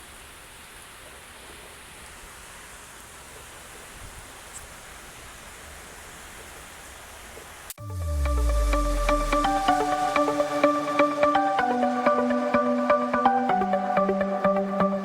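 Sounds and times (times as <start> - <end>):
wind: 0.0 - 7.8
rain: 0.0 - 11.8.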